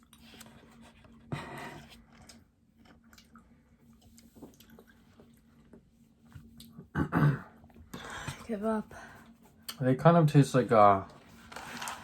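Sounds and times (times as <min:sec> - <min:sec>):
quiet chewing with crackles: 0:00.0 - 0:06.9.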